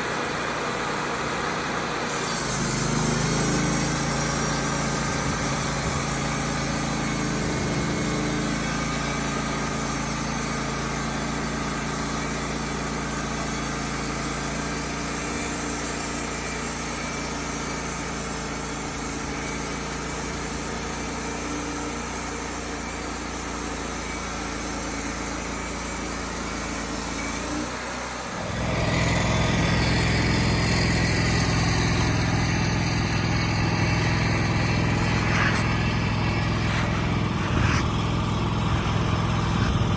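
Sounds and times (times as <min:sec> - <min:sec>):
engine running steadily: 0:00.0 - 0:13.2, 0:28.3 - 0:39.9
deeper louder engine: 0:31.3 - 0:39.9.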